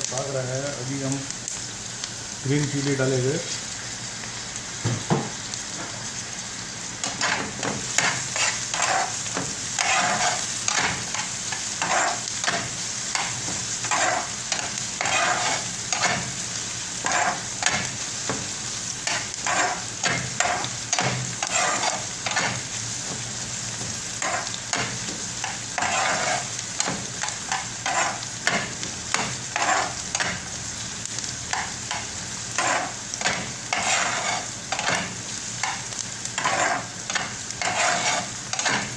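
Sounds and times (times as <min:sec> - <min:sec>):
onions sizzling in hot oil: 0:00.0 - 0:38.9
spatula scraping a pan: 0:07.0 - 0:16.4, 0:17.0 - 0:30.4, 0:31.5 - 0:38.9.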